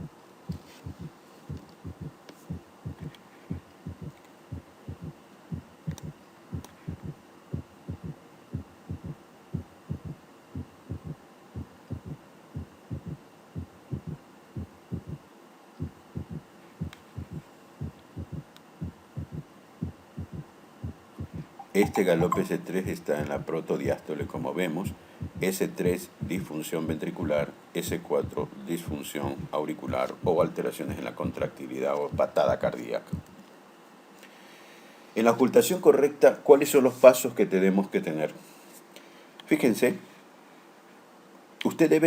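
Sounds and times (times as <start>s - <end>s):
heartbeat gallop rhythm: 0.0s - 15.2s, 15.8s - 24.5s, 25.2s - 26.5s, 27.2s - 31.5s, 32.1s - 33.3s.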